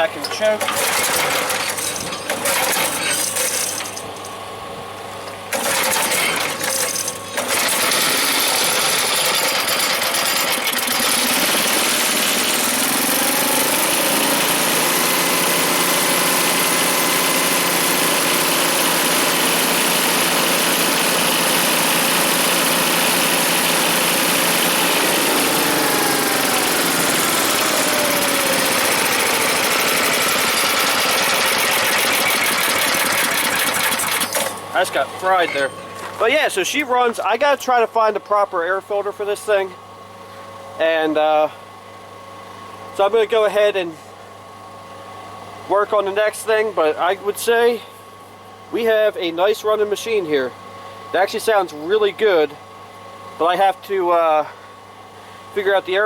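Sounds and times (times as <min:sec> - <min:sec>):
small gas engine sputtering and running: 0:00.0 - 0:04.4, 0:05.4 - 0:36.3.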